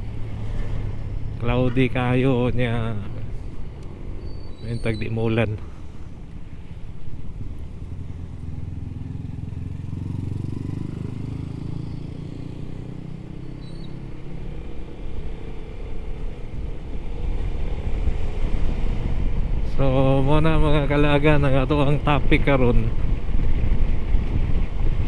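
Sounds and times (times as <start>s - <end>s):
low road rumble: 0.0s - 25.0s
motorcycle engine running: 5.6s - 25.0s.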